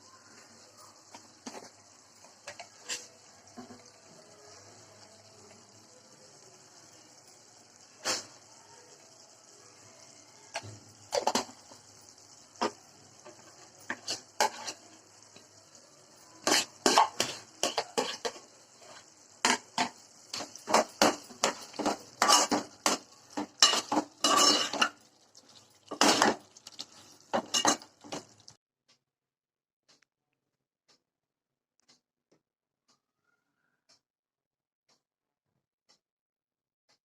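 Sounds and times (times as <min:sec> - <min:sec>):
metal spoon scraping a pot: 0:02.4 - 0:03.8, 0:13.2 - 0:15.4, 0:16.3 - 0:25.0, 0:25.9 - 0:28.2.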